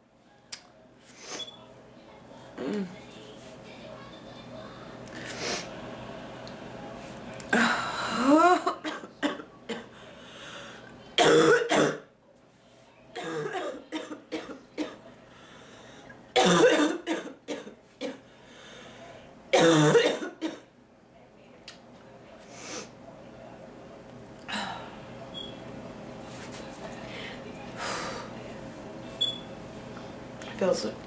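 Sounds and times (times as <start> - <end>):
woman coughing: 7.5 - 9.9, 11.2 - 12.1, 13.2 - 15.0, 16.4 - 18.2, 19.6 - 20.7.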